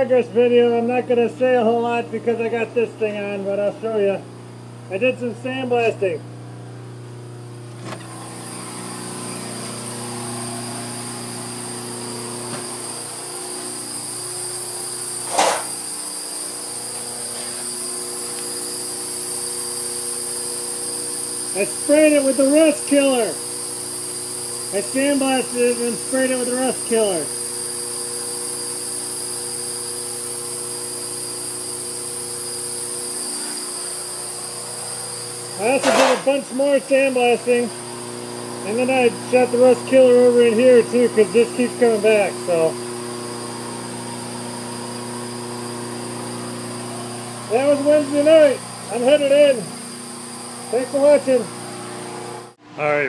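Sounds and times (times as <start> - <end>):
steady hum with high whine: 0.0 - 45.5, 46.1 - 51.8
sharp knock: 35.8 - 36.4.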